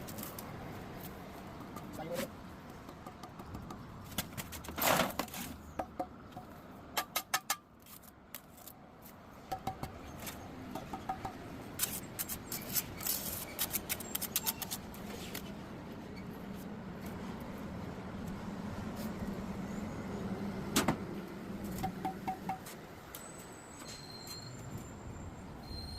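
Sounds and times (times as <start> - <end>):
hard objects clicking and tapping: 2.7 - 4.6, 5.8 - 7.7, 9.5 - 10.0, 10.7 - 11.4, 21.8 - 22.7.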